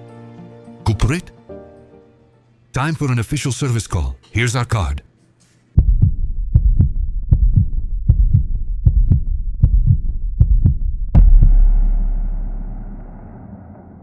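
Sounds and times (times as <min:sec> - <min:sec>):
deep thumping pulse: 0:05.8 - 0:14.0
loud ringing hit: 0:11.2 - 0:14.0.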